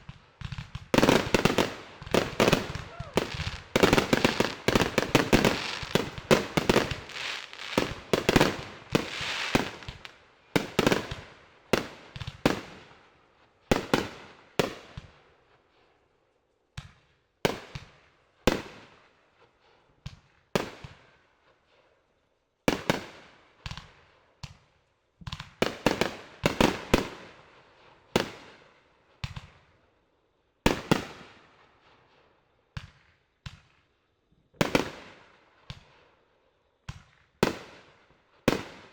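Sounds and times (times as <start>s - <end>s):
fireworks bangs echoing: 0.0s - 12.8s.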